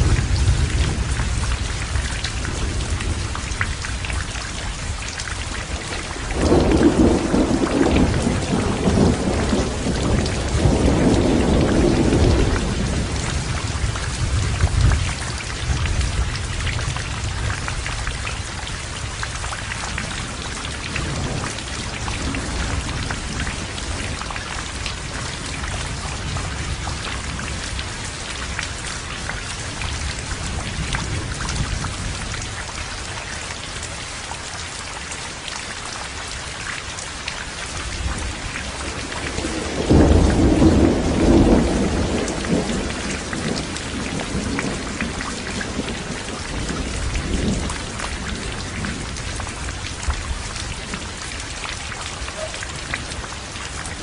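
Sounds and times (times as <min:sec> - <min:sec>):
rolling thunder: 0:00.0 - 0:04.2, 0:05.6 - 0:18.2, 0:18.9 - 0:27.9, 0:38.0 - 0:51.2
heavy rain falling: 0:00.0 - 0:54.0.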